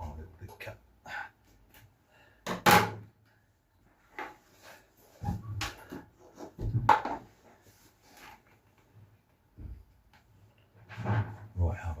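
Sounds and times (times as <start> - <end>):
rustles and knocks: 4.0 - 11.6.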